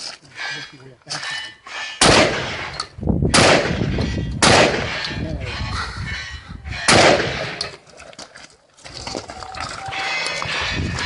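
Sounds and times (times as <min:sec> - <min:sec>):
gunshots: 0:02.0 - 0:05.2, 0:06.8 - 0:07.7.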